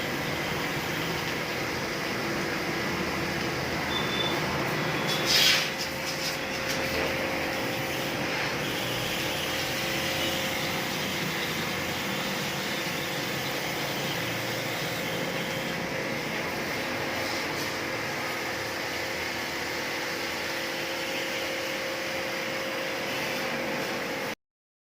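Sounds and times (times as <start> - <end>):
air conditioner whirring hum: 0.0 - 24.4
short loud hiss: 5.1 - 6.3.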